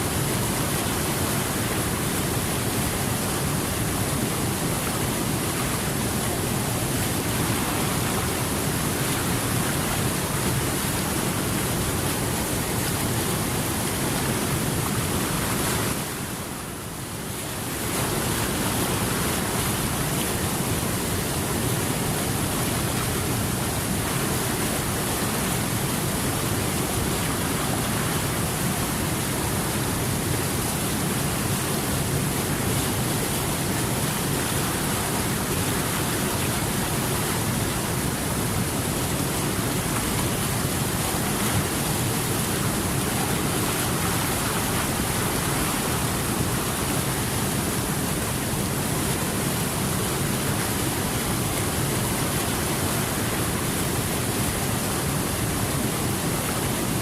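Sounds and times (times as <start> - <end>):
rush of flowing water: 0.0 - 57.0.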